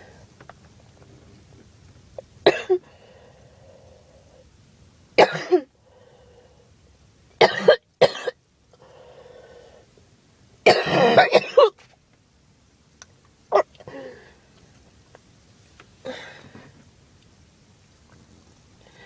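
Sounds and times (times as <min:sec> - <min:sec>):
girl coughing: 0:02.5 - 0:02.8, 0:05.2 - 0:05.7, 0:07.4 - 0:08.4, 0:10.7 - 0:11.8.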